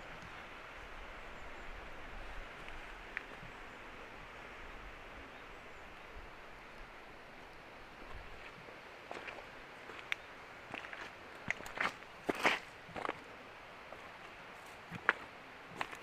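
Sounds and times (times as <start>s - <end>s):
wind rumbling on microphone: 0.0s - 8.7s
forest ambience hiss: 0.0s - 16.0s.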